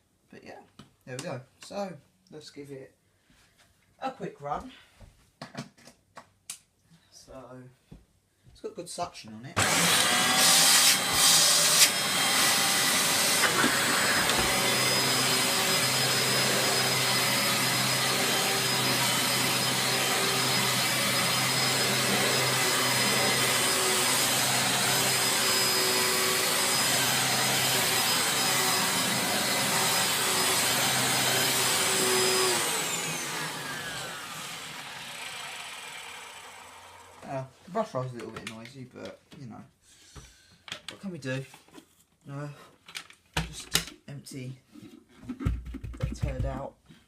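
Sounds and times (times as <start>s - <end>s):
upright vacuum cleaner running: 9.6s - 37.2s
vacuum cleaner winding down: 9.6s - 37.3s.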